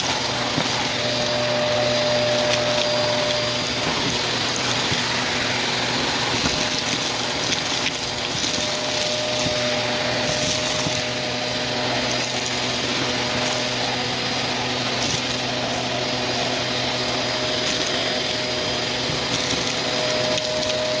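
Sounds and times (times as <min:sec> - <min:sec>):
vacuum cleaner motor whine: 0:00.0 - 0:21.0.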